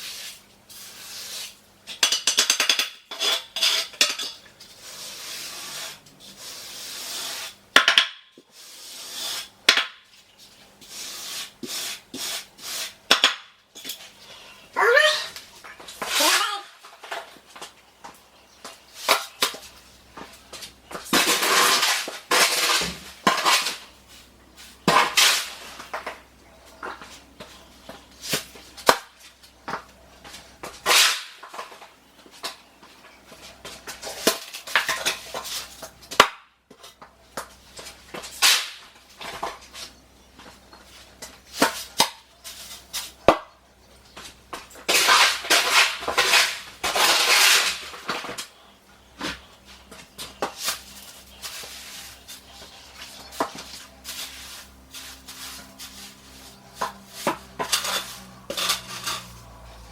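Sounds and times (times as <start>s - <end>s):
trowel scraping mortar: 2.7s - 7.6s, 8.4s - 9.6s, 10.8s - 14.2s, 14.9s - 17.4s, 18.6s - 29.4s, 40.9s - 43.3s, 44.6s - 48.5s, 49.2s - 59.9s.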